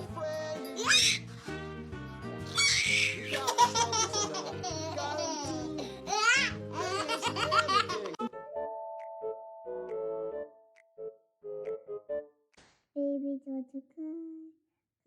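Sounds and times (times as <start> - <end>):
background music: 0.0 - 12.4
baby laughing: 0.8 - 1.2, 2.5 - 8.3.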